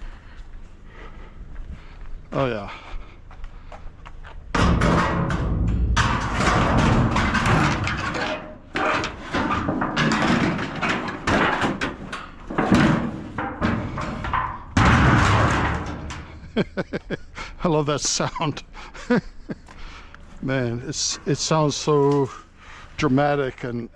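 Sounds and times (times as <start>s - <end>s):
steel sheet booming and rattling: 4.5s - 16.8s.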